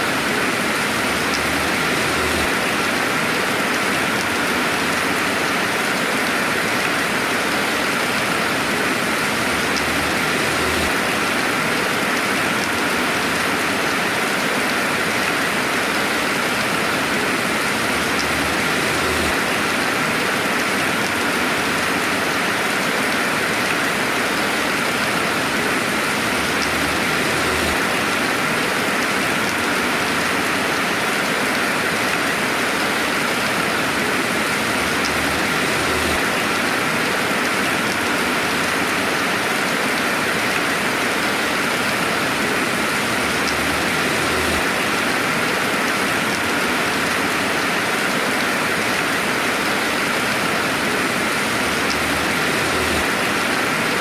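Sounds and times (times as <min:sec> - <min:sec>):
dense rainfall hiss: 0:00.0 - 0:54.0
raindrop ticks: 0:26.3 - 0:27.8, 0:34.8 - 0:36.2, 0:43.0 - 0:44.7.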